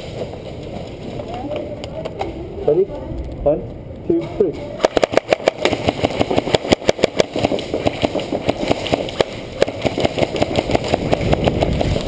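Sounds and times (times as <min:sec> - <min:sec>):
airsoft guns firing bursts: 0:04.8 - 0:12.0.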